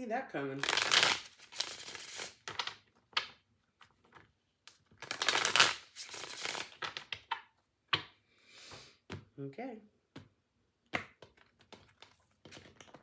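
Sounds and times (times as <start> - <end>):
cards being shuffled: 0.6 - 8.1, 11.0 - 13.0.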